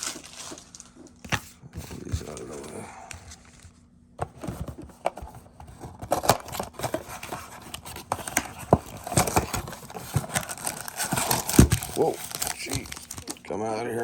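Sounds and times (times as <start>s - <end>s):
cardboard and wrappers rustling: 0.0s - 14.0s.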